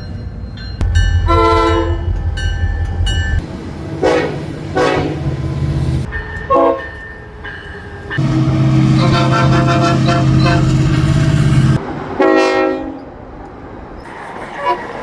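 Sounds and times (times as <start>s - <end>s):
locomotive low rumble: 0.0s - 6.8s, 8.1s - 11.8s
multi-tone horn blast: 1.2s - 2.1s, 3.8s - 6.8s, 8.2s - 13.0s
short horn toots: 8.2s - 11.3s.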